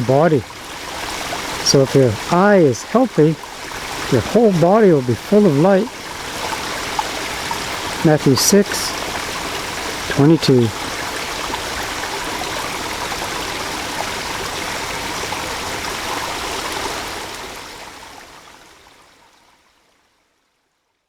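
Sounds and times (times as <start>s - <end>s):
stream rushing: 0.0s - 19.0s.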